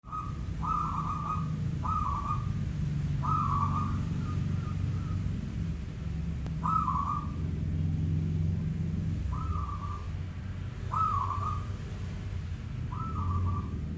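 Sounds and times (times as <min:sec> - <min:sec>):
dove cooing: 0:00.0 - 0:05.4, 0:06.5 - 0:07.6, 0:09.1 - 0:10.2, 0:10.8 - 0:11.9, 0:12.9 - 0:13.9
steady low hum: 0:00.0 - 0:13.9.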